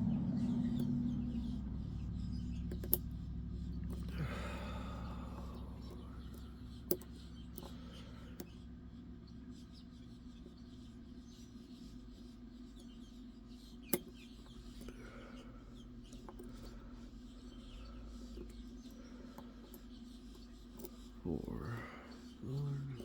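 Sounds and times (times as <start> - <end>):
steady low hum: 0.0 - 23.0
lock pick scraping and ticking: 2.7 - 3.0, 5.8 - 7.8.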